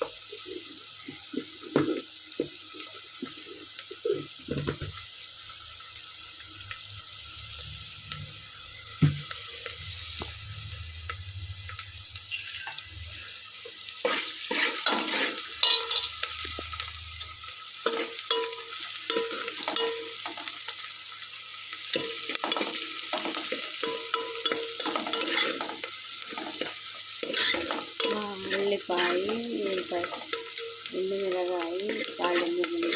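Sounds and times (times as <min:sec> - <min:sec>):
food sizzling in oil: 0:00.0 - 0:32.9
spatula scraping pan: 0:14.0 - 0:16.6, 0:17.8 - 0:20.5, 0:21.9 - 0:32.9.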